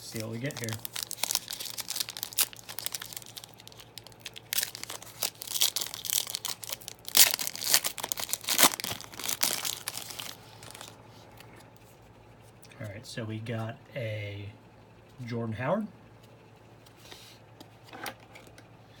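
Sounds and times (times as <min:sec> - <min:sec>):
plastic wrapper tearing and crinkling: 0:00.0 - 0:11.0.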